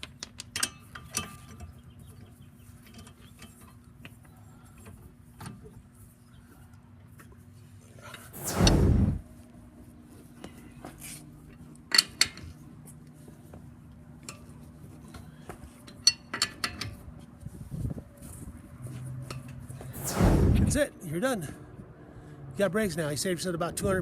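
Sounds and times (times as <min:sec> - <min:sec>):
brief rushing noise: 0:08.4 - 0:09.4, 0:19.8 - 0:21.1.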